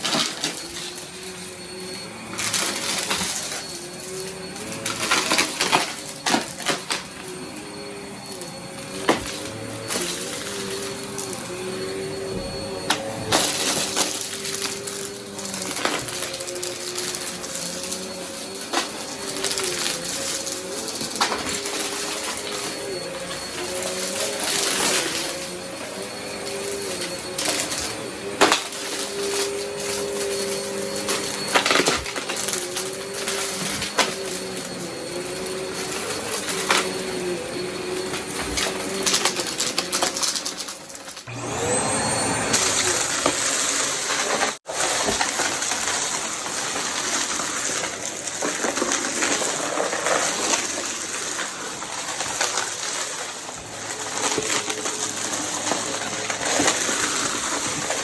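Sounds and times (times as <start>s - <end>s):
vacuum cleaner running: 0.0s - 58.0s
rising whine: 7.2s - 14.1s.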